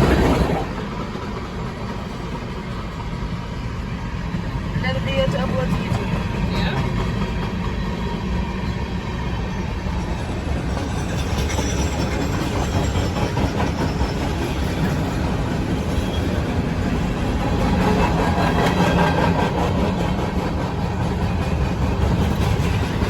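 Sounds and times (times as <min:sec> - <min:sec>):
freight train rolling by: 0:00.0 - 0:23.0.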